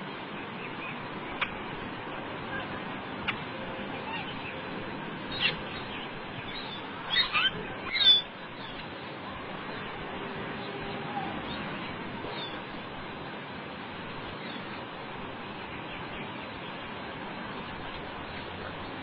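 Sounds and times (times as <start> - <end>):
steady hiss: 0.0 - 19.0
bird squawking: 5.3 - 5.6, 6.6 - 8.3.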